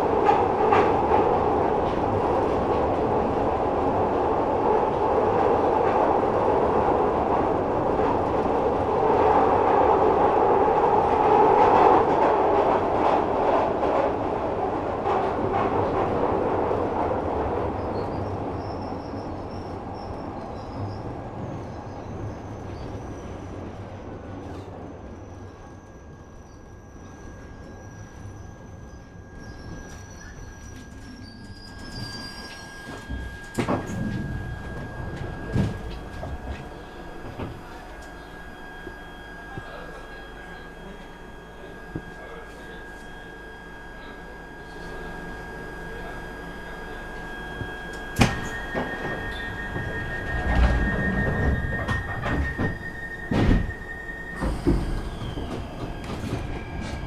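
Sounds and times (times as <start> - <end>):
train rumbling on rails: 0.0 - 57.0
high steady squeal: 25.3 - 57.0.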